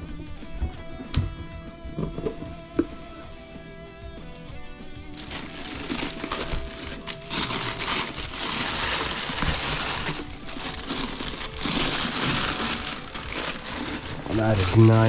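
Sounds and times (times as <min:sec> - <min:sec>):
packaging wrap crinkling: 0:05.2 - 0:15.0.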